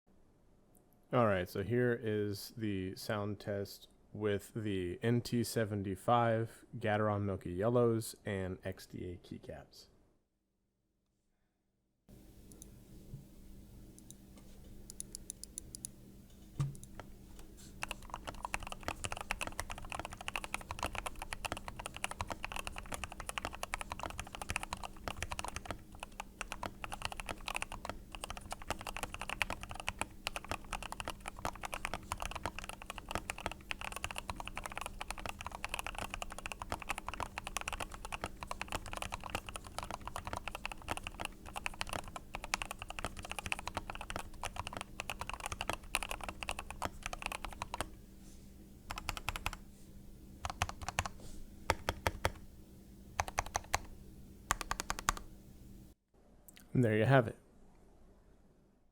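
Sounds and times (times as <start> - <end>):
mechanical keyboard typing: 14.9 - 15.9, 17.8 - 47.9, 48.9 - 49.6, 50.4 - 52.4, 53.2 - 53.9, 54.5 - 55.3.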